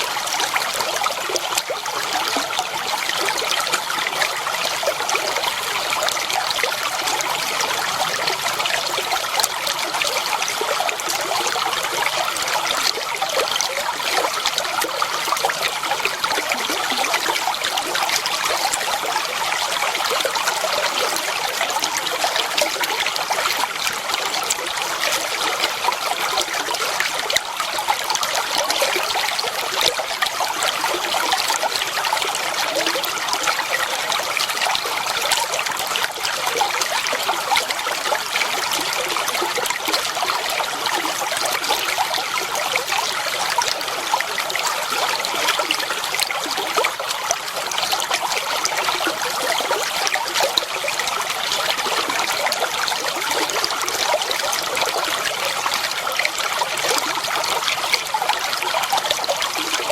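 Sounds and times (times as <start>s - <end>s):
water flowing and trickling: 0.0s - 59.9s.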